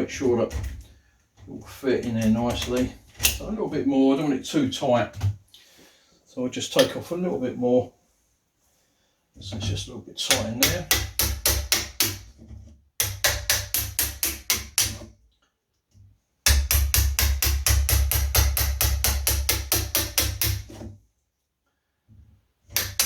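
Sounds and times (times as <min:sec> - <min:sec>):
hammer tapping wood chisel: 0:10.3 - 0:12.4, 0:13.0 - 0:15.0, 0:16.5 - 0:20.8, 0:22.7 - 0:23.0.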